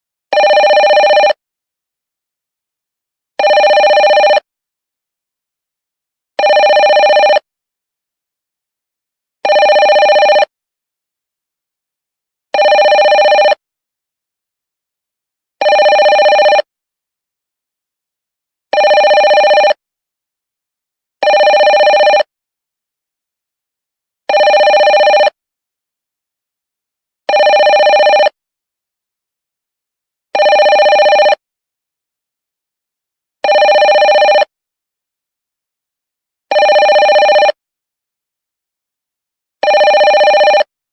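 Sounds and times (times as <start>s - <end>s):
telephone ringing: 0.3s - 1.4s, 3.4s - 4.5s, 6.4s - 7.5s, 9.4s - 10.5s, 12.6s - 13.6s, 15.6s - 16.7s, 18.7s - 19.8s, 21.2s - 22.3s, 24.3s - 25.4s, 27.3s - 28.4s, 30.4s - 31.4s, 33.4s - 34.6s, 36.5s - 37.6s, 39.6s - 40.7s.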